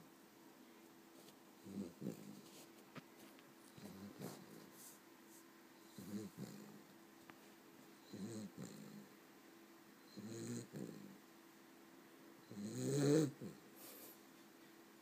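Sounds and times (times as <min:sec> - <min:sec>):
puppy snoring: 0:01.6 - 0:02.7, 0:03.7 - 0:05.0, 0:05.8 - 0:06.9, 0:08.0 - 0:09.2, 0:10.0 - 0:11.2, 0:12.4 - 0:14.1.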